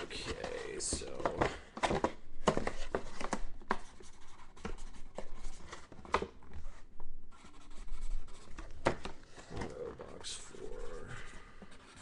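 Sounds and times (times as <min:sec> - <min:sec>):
hands scraping and tapping at desk: 0:00.0 - 0:06.2.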